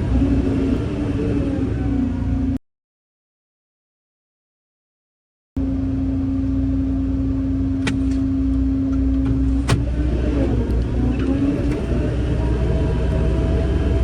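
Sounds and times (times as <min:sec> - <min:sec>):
diesel engine rumbling: 0:00.0 - 0:02.6, 0:05.6 - 0:14.0.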